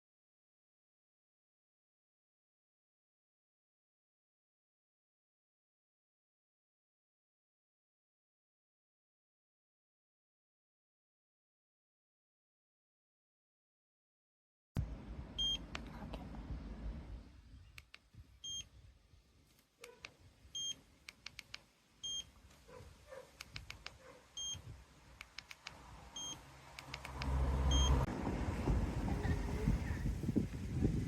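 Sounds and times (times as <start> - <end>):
low rumbling noise: 14.8 - 19.3, 25.8 - 31.0
short high beeps: 15.4 - 15.6, 18.4 - 18.7, 20.6 - 20.8, 22.0 - 22.3, 24.4 - 24.7, 26.2 - 26.4, 27.7 - 28.0
small clicks: 21.0 - 21.7, 23.4 - 24.0, 25.2 - 27.4.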